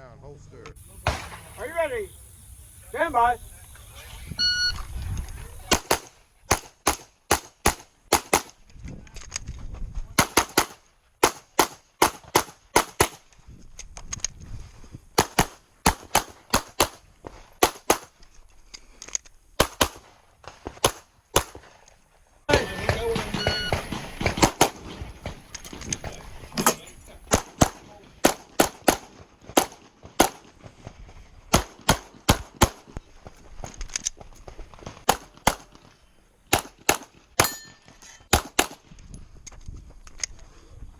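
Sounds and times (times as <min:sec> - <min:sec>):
pistol shots: 0:00.8 - 0:02.0, 0:05.6 - 0:08.6, 0:10.2 - 0:13.2, 0:15.2 - 0:17.0, 0:17.6 - 0:18.1, 0:19.6 - 0:21.7, 0:22.5 - 0:30.6, 0:31.5 - 0:32.9, 0:34.8 - 0:35.8, 0:36.5 - 0:37.6, 0:38.3 - 0:38.8.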